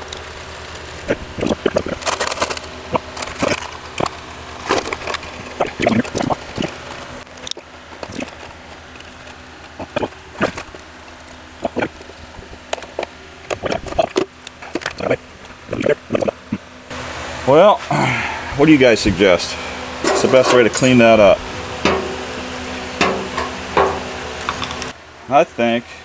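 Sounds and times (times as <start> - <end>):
hand tools scraping rusted metal: 20.0 - 24.9.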